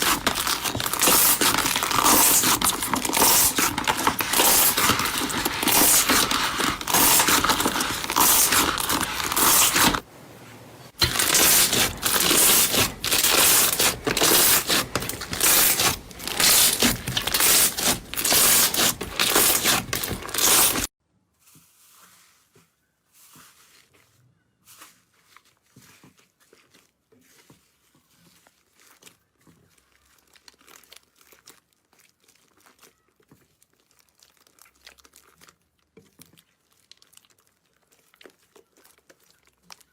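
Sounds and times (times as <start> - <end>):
slime crackling and popping: 0.0 - 10.0, 11.0 - 20.9, 28.6 - 39.9.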